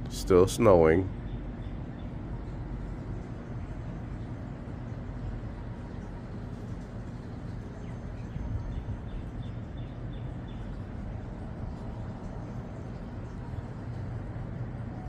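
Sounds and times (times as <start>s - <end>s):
low rumbling background noise: 0.0s - 15.0s.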